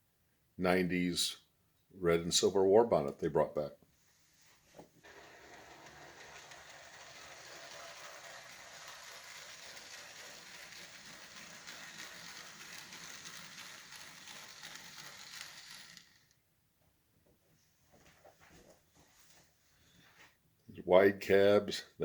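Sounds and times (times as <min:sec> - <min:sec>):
crackle of wheels on rail: 0:05.0 - 0:16.4
model locomotives whirring: 0:05.0 - 0:16.4.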